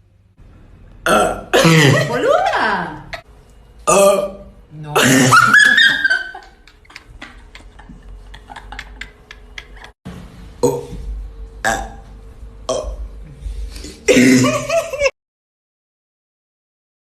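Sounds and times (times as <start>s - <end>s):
person burping loudly: 1.0s - 2.0s, 3.8s - 4.4s, 10.6s - 11.0s, 11.6s - 12.1s, 12.7s - 13.1s, 14.0s - 14.6s.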